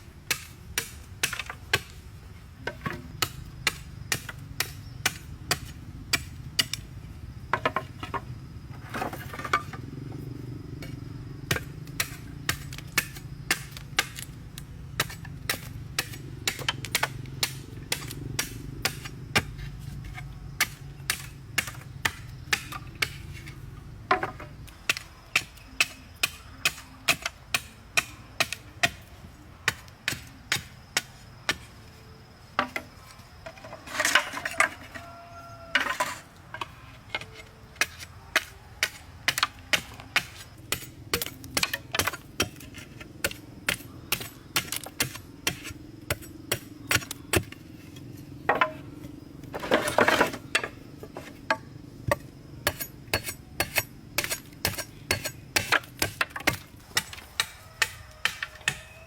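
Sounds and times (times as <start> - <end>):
hand tool striking: 35.8 - 47.6, 49.5 - 59.0.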